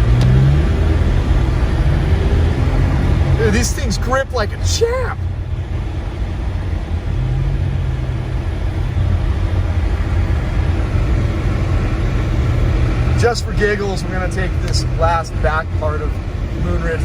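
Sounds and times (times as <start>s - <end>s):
car engine and tyre noise: 0.0s - 17.0s.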